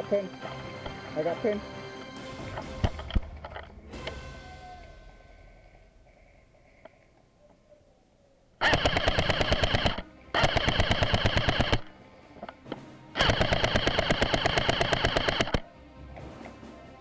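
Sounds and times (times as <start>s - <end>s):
airsoft rifle full-auto bursts: 8.6s - 12.0s, 13.2s - 15.6s.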